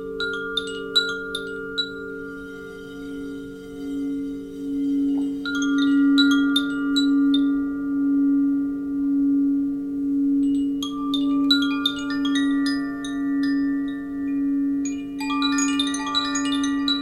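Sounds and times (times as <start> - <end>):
sustained humming tone: 0.0 - 17.0.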